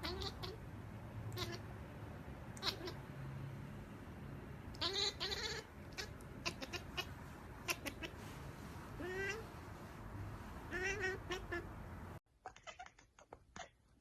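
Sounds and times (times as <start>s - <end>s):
kitten meowing: 0.0s - 0.6s, 1.3s - 1.6s, 2.6s - 3.0s, 4.8s - 8.2s, 9.0s - 9.4s, 10.7s - 11.7s.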